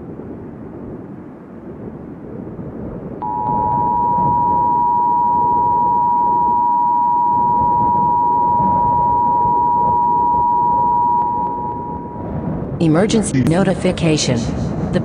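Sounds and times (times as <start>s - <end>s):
two-tone emergency alert signal: 3.2s - 12.3s
low rushing noise: 3.2s - 12.9s.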